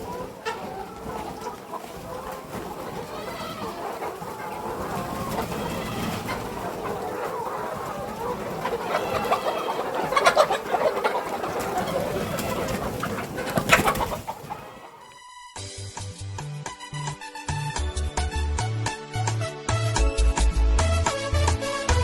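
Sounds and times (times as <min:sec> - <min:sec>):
chickens clucking: 0:00.0 - 0:15.2.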